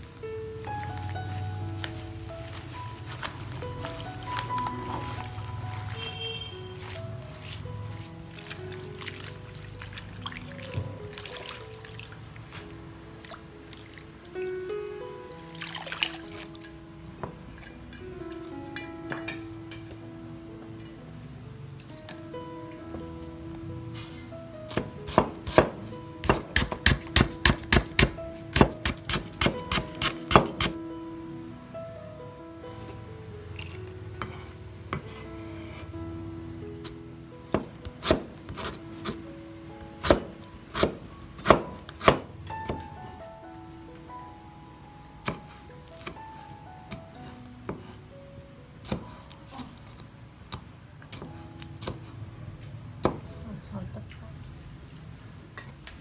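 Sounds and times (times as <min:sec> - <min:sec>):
soft background music: 0:00.0 - 0:56.0
knife chopping on cutting board: 0:24.7 - 0:30.8, 0:40.0 - 0:42.8.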